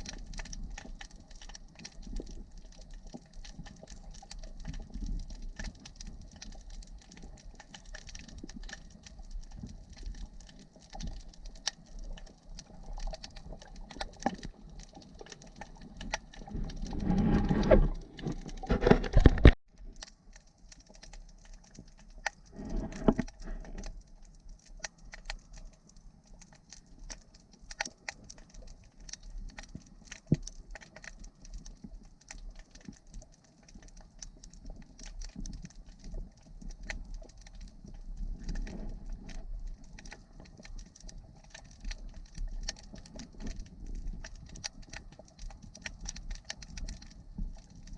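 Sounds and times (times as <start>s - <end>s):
underwater crackle of clicks: 0.0s - 47.9s
bubbly rushing noise: 16.5s - 19.6s.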